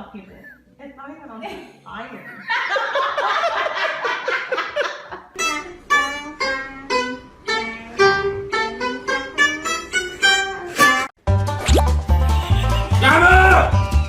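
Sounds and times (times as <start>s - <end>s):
plucked string melody: 5.4s - 14.0s.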